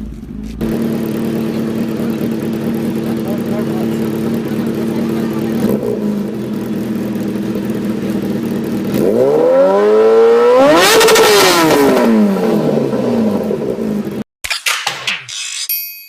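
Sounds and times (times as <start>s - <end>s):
motorcycle accelerating past: 8.6s - 14.0s.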